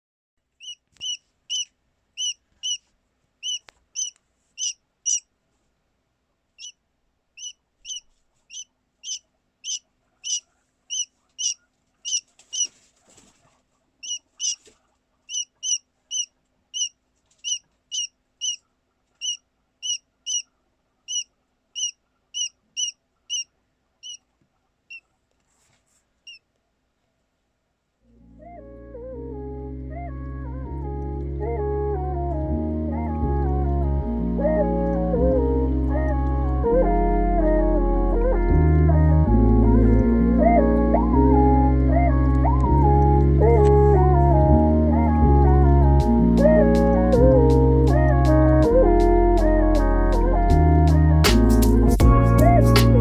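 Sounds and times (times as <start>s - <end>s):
quail chick peeping: 0.5s - 5.3s, 6.6s - 6.8s, 7.4s - 25.3s, 26.2s - 26.5s.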